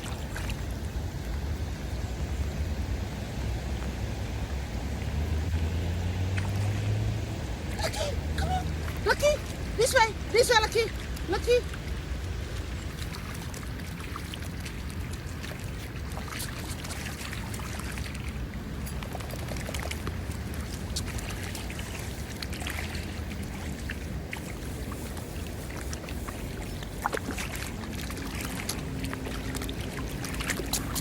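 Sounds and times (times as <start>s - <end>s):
dog wading through water: 0.0s - 31.0s
low rush of water: 0.0s - 31.0s.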